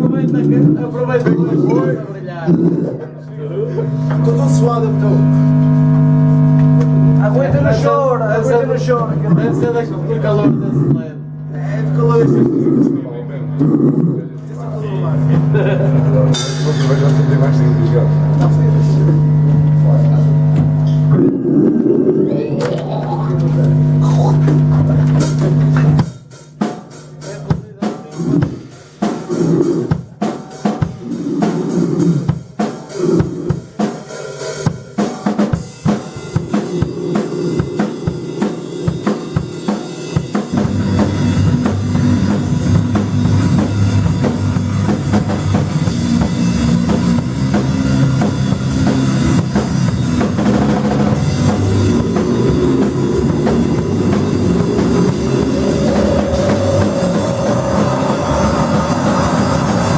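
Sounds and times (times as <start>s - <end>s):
drum kit hits and fills: 14.7s - 21.2s, 23.1s - 59.9s
live rock band playing: 15.0s - 20.9s, 35.0s - 59.9s.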